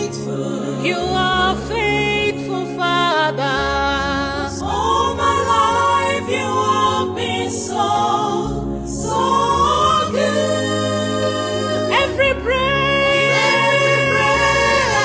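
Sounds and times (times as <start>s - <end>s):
held accompaniment chords: 0.0s - 15.0s
wordless gliding singing: 0.0s - 15.0s.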